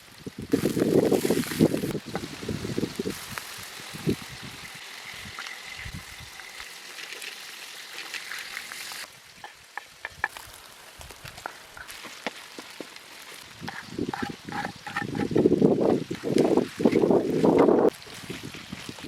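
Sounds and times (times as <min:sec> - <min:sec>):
meat sizzling in a pan: 0:00.1 - 0:15.2.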